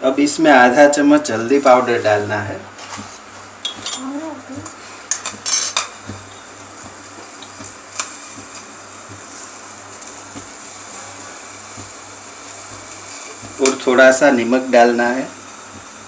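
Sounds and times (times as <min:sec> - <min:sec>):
metal spoon clinking on pot: 0:05.1 - 0:05.9.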